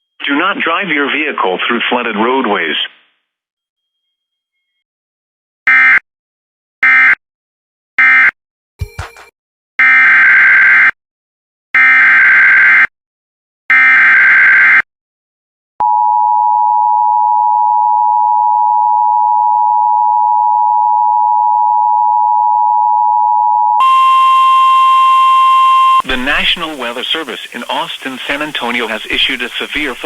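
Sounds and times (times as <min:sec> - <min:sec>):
two-tone attention signal: 0:15.8 - 0:27.0
screeching data bursts: 0:23.8 - 0:30.0.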